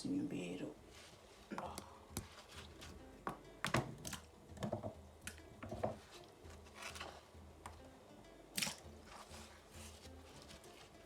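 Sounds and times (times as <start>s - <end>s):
potatoes and utensils clattering in water: 2.2s - 7.9s, 8.5s - 11.0s.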